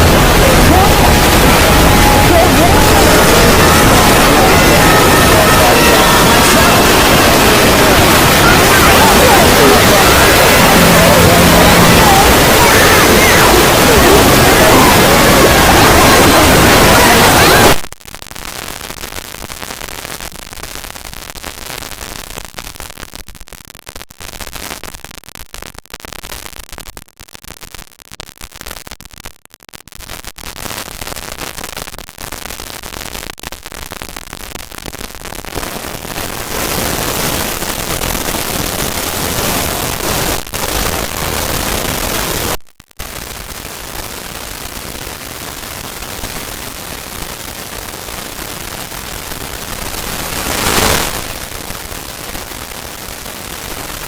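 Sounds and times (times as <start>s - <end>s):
sped-up stomach growling noise: 0.0s - 17.8s.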